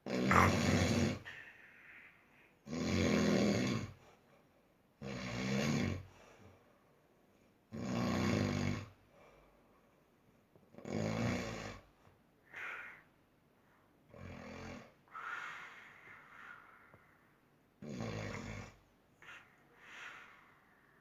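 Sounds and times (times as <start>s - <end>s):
person snoring heavily: 0.1s - 1.3s.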